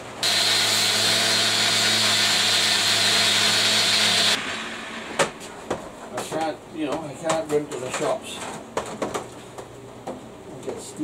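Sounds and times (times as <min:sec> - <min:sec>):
power tool whining: 0:00.2 - 0:05.4.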